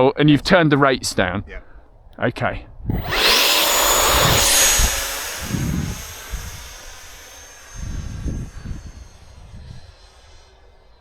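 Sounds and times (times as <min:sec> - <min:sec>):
low rumbles: 0:02.9 - 0:09.1
model jet fan whine: 0:02.9 - 0:10.4.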